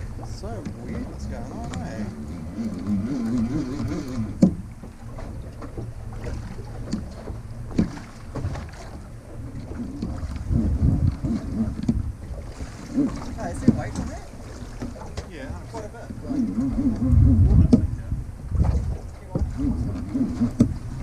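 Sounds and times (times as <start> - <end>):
boat and water rumble: 0.0 - 21.0
wind on microphone: 9.5 - 21.0.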